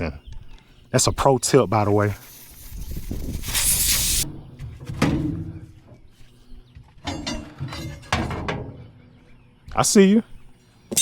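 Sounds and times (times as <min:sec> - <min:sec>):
burst of hiss: 0:01.9 - 0:04.3.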